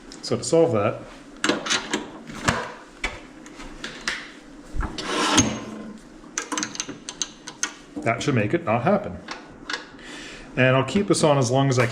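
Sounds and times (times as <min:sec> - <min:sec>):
short metal scrape: 0:05.0 - 0:05.8.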